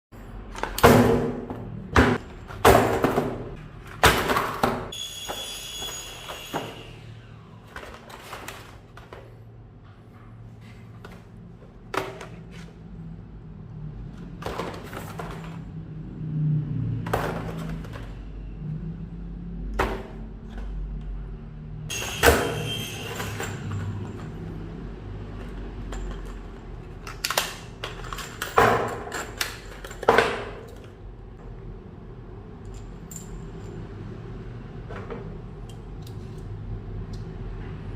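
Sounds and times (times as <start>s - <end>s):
brief high ringing tone: 5.0s - 7.0s, 21.9s - 23.6s.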